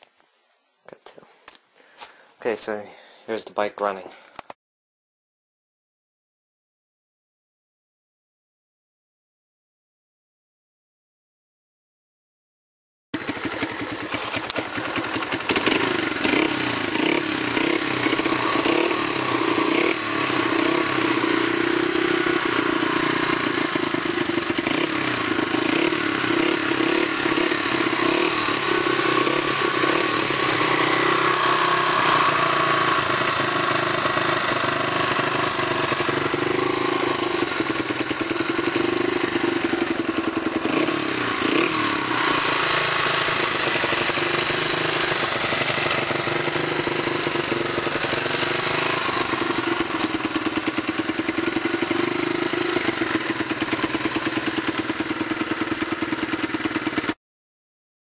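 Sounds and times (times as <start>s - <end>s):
motorcycle engine revving: 13.2s - 57.2s.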